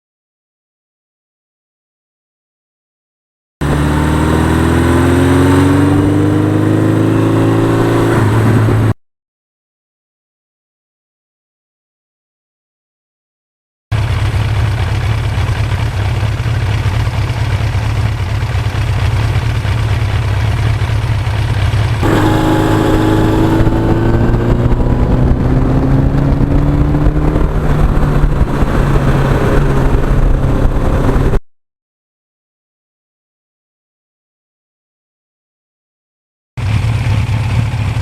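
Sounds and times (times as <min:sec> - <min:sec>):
motorcycle engine running: 0:03.6 - 0:09.0, 0:13.9 - 0:31.4, 0:36.6 - 0:38.0
wind noise: 0:03.6 - 0:09.0, 0:22.0 - 0:31.4.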